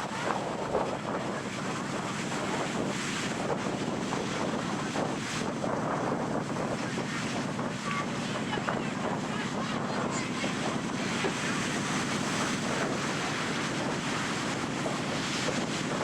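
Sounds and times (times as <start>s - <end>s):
ocean surf washing on beach: 0.0s - 16.0s
wind buffeting microphone: 0.0s - 16.0s.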